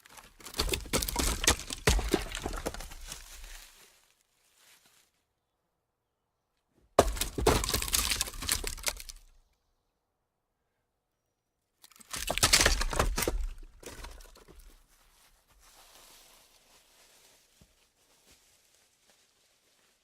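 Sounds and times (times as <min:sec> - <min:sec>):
logs rolling and clattering: 0:00.0 - 0:03.6.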